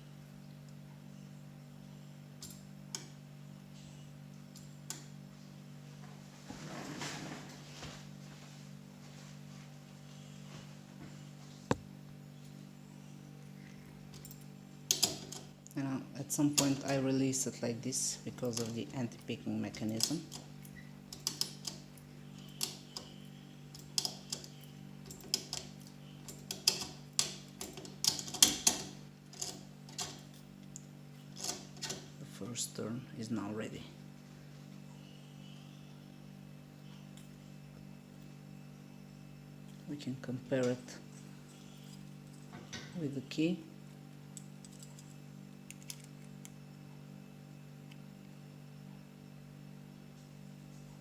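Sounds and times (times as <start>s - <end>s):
faint steady hum: 0.0s - 51.0s
lock decoder clicking: 14.9s - 15.6s, 18.3s - 32.1s
light metallic clicks of lock tools: 44.3s - 46.6s.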